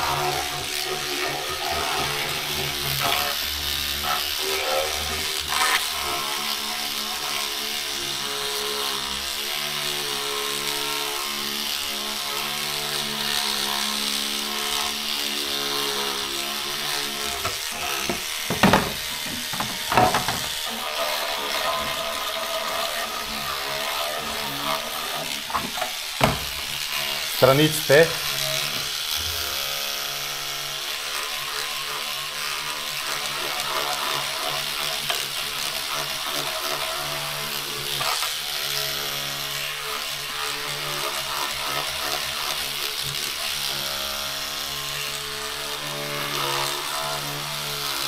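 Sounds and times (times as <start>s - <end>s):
electric brush motor humming: 0.0s - 48.0s
sharp knocks: 17.4s - 20.6s, 25.5s - 26.8s.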